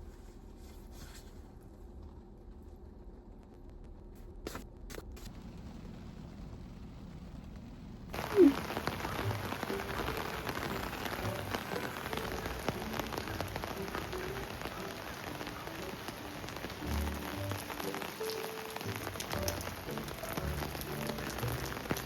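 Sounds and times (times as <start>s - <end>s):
rain falling: 5.2s - 22.0s.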